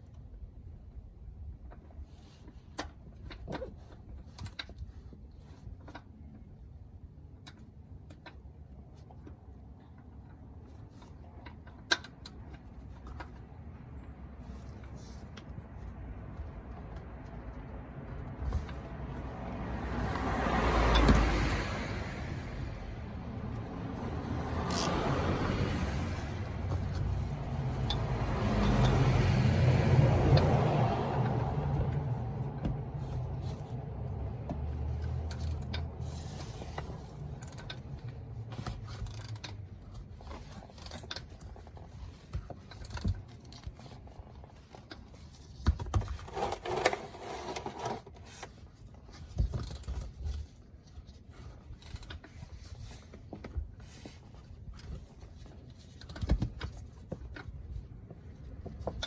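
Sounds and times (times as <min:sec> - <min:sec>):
vehicle rumble: 0:00.2 - 0:59.0
tools clicking and scraping: 0:18.3 - 0:29.4, 0:34.9 - 0:59.0.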